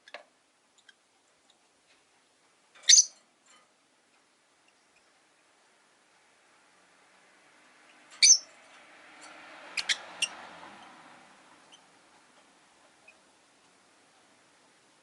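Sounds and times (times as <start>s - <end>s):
lovebirds chirping: 2.8s - 3.2s, 7.8s - 8.6s, 9.8s - 10.4s
vehicle passing: 5.4s - 14.7s.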